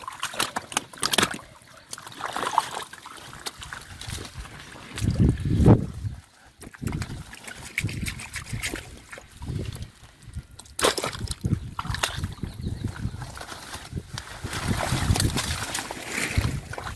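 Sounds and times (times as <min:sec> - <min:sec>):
water dripping: 0:00.0 - 0:05.7
water sloshing and splashing: 0:00.0 - 0:16.9.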